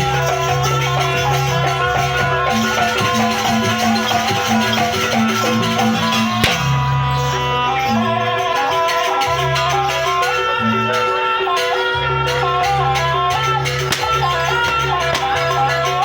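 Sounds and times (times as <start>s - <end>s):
percussion ensemble dance music: 0.0s - 16.0s
sharp crack: 13.9s - 14.4s.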